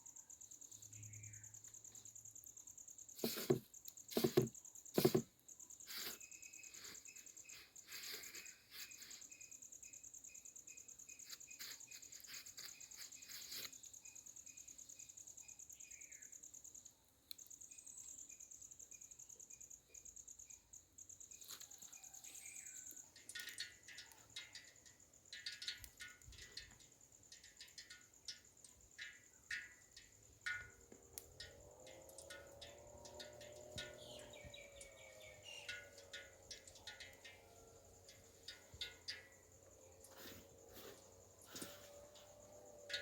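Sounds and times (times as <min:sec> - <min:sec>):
insect trilling: 0:02.8 - 0:16.8, 0:17.6 - 0:43.0
bird chirps: 0:33.1 - 0:37.5.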